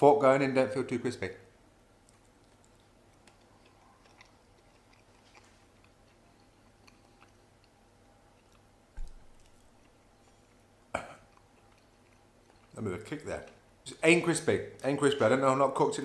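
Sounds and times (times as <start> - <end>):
person chewing food: 1.7 - 13.8.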